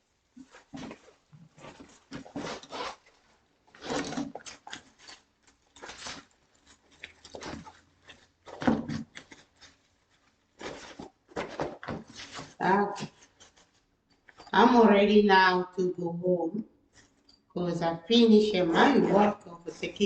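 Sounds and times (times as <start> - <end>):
bag rustling and knocking: 0.4 - 14.6.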